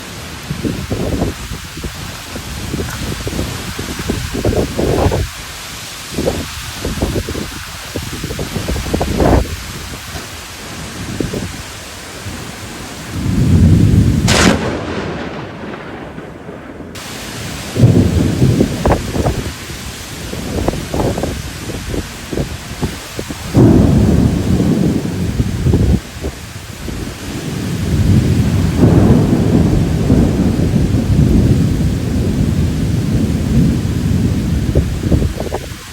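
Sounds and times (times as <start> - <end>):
rain hissing: 0.0 - 35.9
thunder rumbling: 0.0 - 35.9
sharp thunder crack: 13.1 - 19.7, 23.4 - 35.6.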